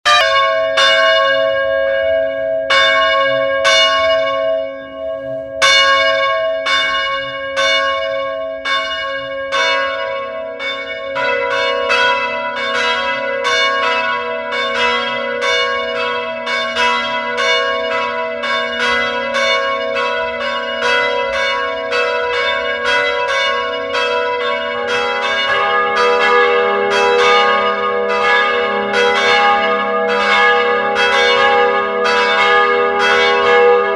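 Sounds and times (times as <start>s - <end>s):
church bells ringing: 0.0s - 33.9s.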